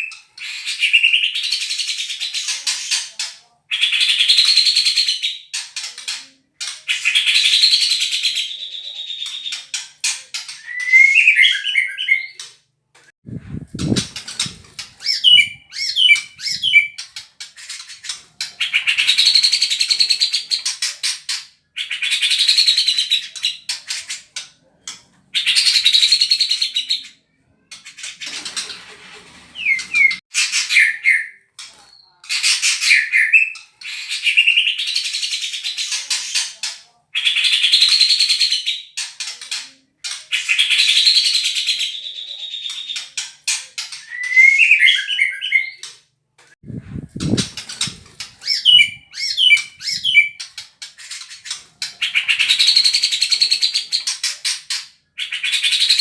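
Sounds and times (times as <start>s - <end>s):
bird singing whistles and rattles: 9.1s - 12.5s, 13.6s - 20.7s, 29.5s - 31.2s, 40.4s - 45.9s, 47.2s - 54.3s.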